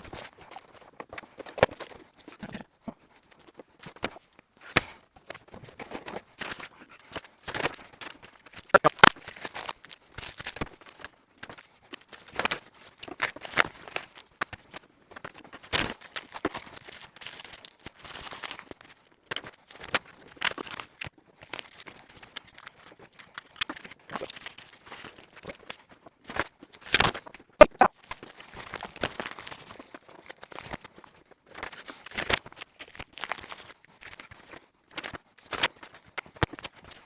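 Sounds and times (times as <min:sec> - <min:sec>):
packaging crinkling and tearing: 0:00.0 - 0:02.4, 0:04.8 - 0:37.0
sharp clicks and taps: 0:08.8 - 0:09.1, 0:27.6 - 0:27.9.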